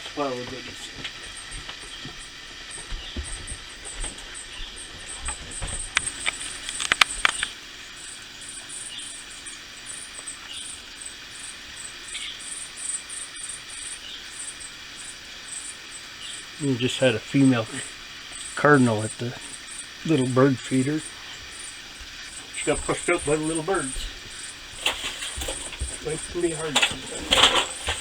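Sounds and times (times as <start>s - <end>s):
crickets chirping: 0.0s - 28.0s
sharp clicks and knocks: 5.6s - 7.6s, 24.7s - 28.0s.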